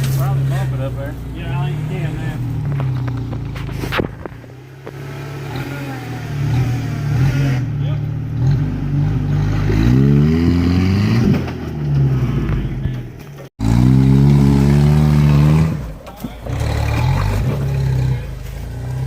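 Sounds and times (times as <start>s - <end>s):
engine revving hard: 4.9s - 12.4s, 13.6s - 19.0s.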